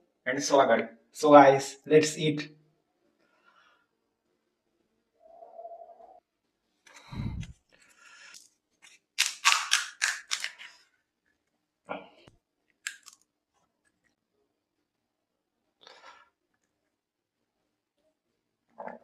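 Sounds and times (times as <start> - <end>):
crisp shells crunching: 8.9 - 10.8, 12.8 - 13.2.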